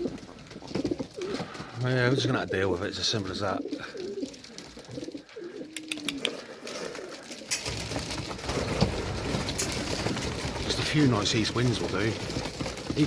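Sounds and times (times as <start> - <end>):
pigeons cooing: 0.0 - 7.8
sharp clicks: 5.7 - 6.4
rustling noise: 6.3 - 13.0.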